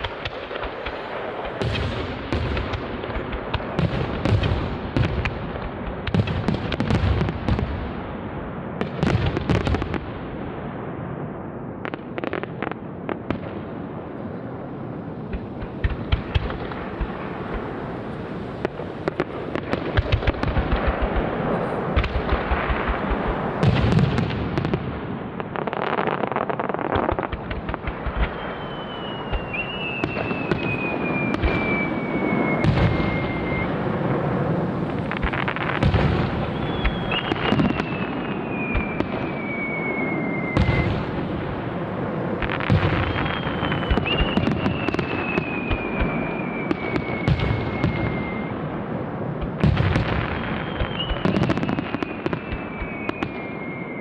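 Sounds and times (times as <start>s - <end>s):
fireworks crackling: 0.0s - 8.0s, 11.8s - 54.0s
falling firework whistle: 13.3s - 24.8s, 25.6s - 54.0s
firework shells bursting: 14.0s - 24.2s, 26.9s - 45.1s.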